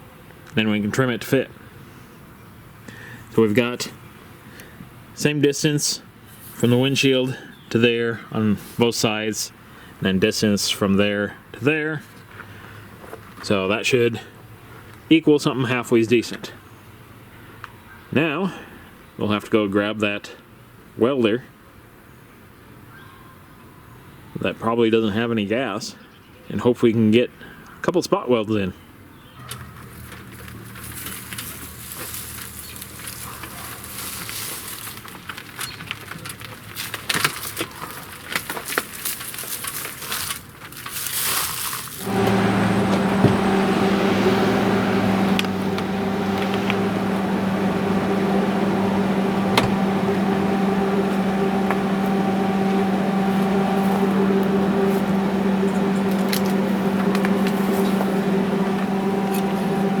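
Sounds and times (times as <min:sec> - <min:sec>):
cooling fan: 0:42.0 - 1:00.0
welder electrical hum: 0:42.0 - 1:00.0.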